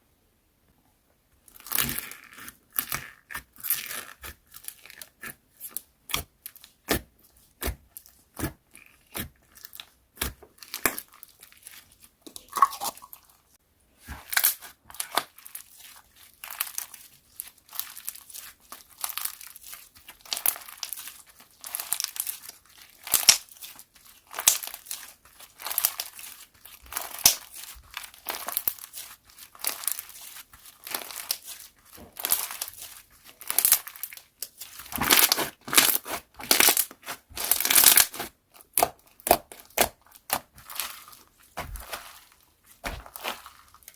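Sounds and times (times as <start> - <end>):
slime squished by hand: 14.1 - 43.9
crinkly crackling: 14.4 - 43.9.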